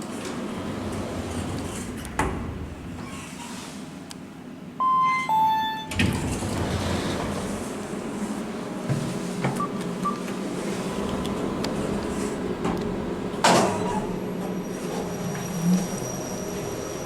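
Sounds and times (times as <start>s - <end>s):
lift car humming: 0.1s - 3.4s, 4.8s - 17.0s
short beeps: 4.8s - 6.0s.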